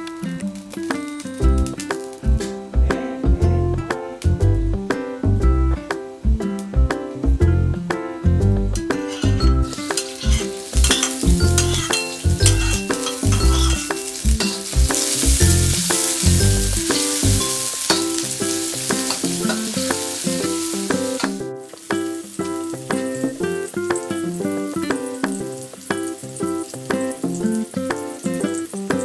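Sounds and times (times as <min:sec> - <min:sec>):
food sizzling in oil: 0:00.0 - 0:02.6, 0:08.8 - 0:29.0.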